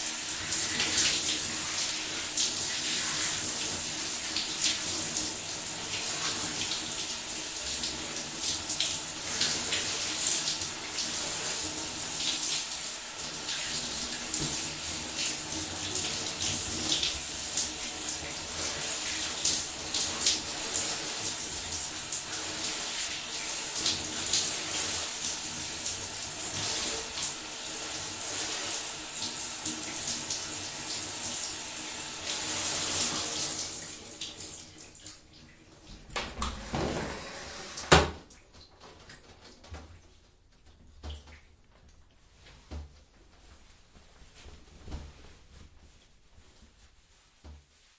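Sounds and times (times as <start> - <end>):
shower spray hissing: 0.0 - 34.6.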